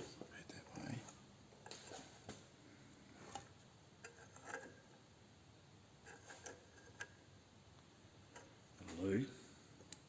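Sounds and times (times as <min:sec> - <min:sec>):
faint clicks and light taps: 0:09.8 - 0:10.0.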